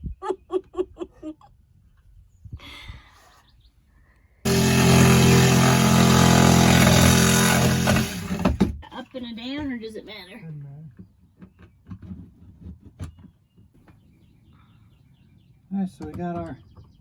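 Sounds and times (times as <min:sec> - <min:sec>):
handheld power tool running: 0:04.5 - 0:08.8.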